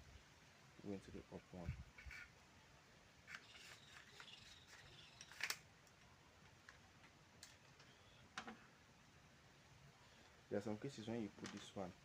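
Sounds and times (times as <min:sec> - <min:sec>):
small metal parts clicking: 0:03.3 - 0:05.6.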